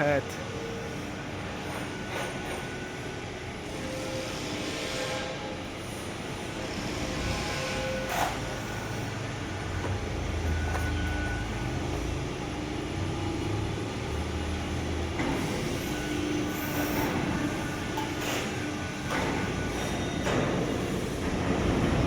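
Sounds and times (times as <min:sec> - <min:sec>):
hydraulic press machine noise: 0:00.1 - 0:22.0
steady machine tone: 0:07.4 - 0:22.0.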